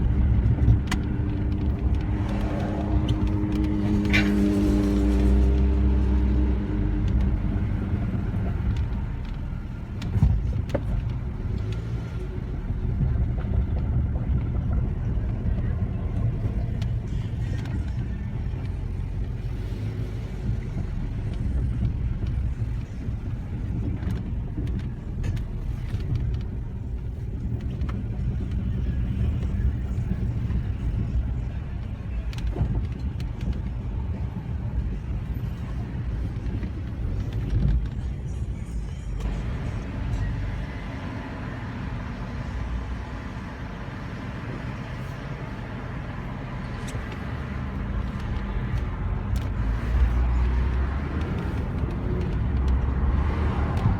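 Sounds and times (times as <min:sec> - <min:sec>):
car engine low rumble: 0:00.0 - 0:53.9.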